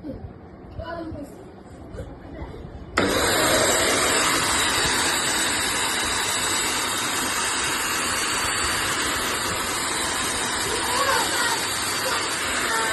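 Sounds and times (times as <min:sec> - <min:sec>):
stick vacuum cleaner running: 0:03.0 - 0:12.9.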